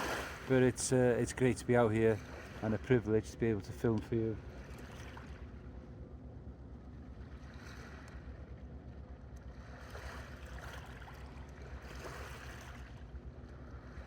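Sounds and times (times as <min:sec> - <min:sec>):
sea waves washing in: 0:00.0 - 0:03.0
low steady rumble: 0:00.0 - 0:14.0.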